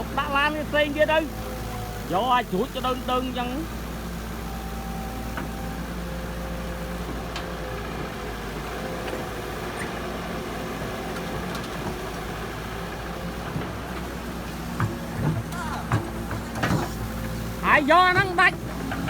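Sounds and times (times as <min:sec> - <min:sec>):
heavy diesel engine running: 0:00.0 - 0:19.0.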